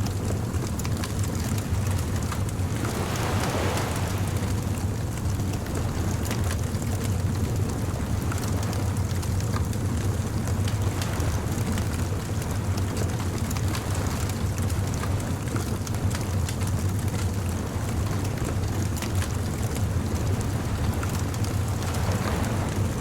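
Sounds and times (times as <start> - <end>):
surf rumbling: 0.0 - 23.0
wave washing in: 1.5 - 9.4, 10.0 - 15.3, 17.9 - 23.0.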